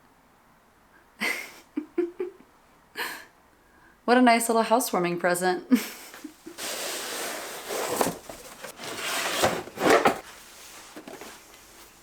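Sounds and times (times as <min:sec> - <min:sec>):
rubbing and scraping: 0:06.5 - 0:12.0.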